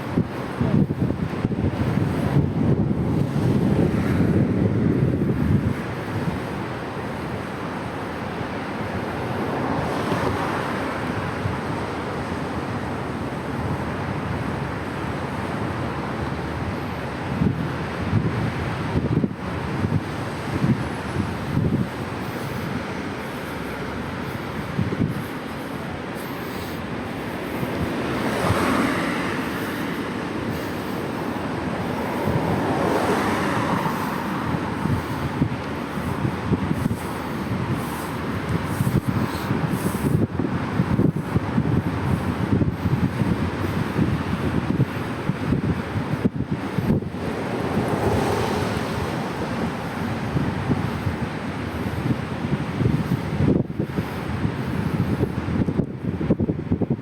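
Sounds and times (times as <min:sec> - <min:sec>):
street traffic noise: 0:00.0 - 0:57.0
wind rushing over microphone: 0:00.0 - 0:57.0.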